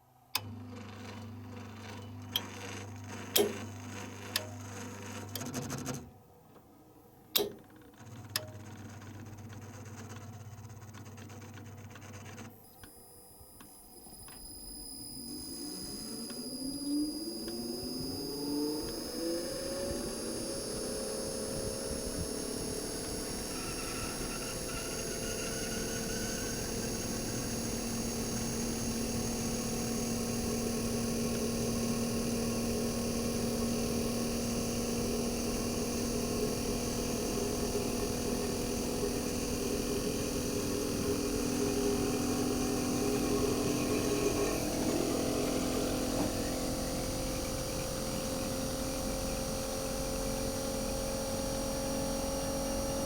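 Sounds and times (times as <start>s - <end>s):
compressor humming with electronic whine: 12.5s - 53.0s.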